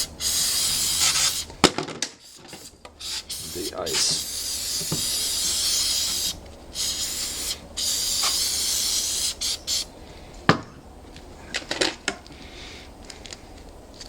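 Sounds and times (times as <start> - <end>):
aerosol can spraying: 0.0 - 1.5, 2.2 - 9.9.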